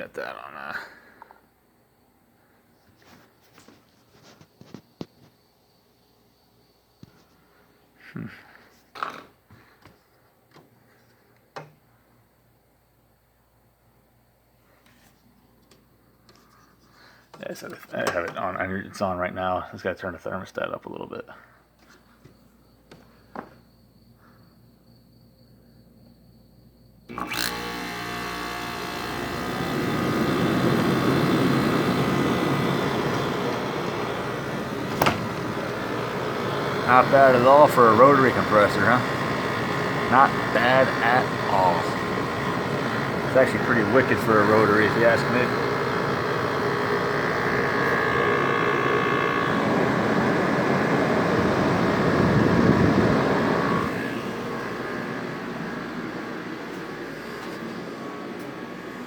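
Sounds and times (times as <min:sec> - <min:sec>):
air conditioner compressor humming: 0:27.0 - 0:59.0
faint high whine: 0:27.1 - 0:59.0.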